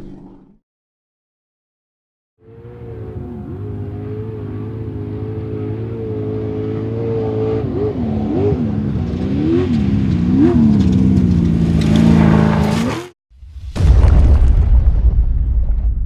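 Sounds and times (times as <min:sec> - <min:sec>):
race vehicle engine revving: 0:02.4 - 0:13.2.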